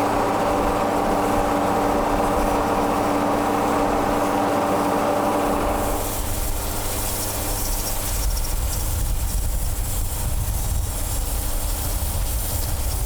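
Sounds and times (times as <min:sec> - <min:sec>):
sawmill engine rumbling: 0:00.0 - 0:07.5.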